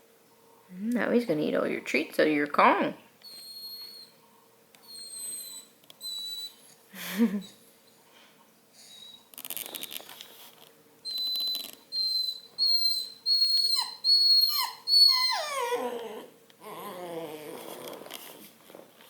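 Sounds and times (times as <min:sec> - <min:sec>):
puppy whining: 0:03.2 - 0:04.2, 0:04.8 - 0:07.6, 0:08.8 - 0:10.1, 0:11.0 - 0:18.6.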